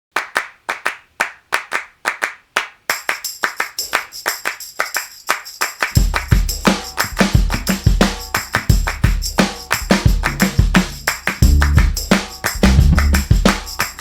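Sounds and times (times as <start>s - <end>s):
rhythmic handclaps: 0.1s - 14.0s
jingling high percussion: 2.9s - 14.0s
heavy bass drum: 6.0s - 14.0s.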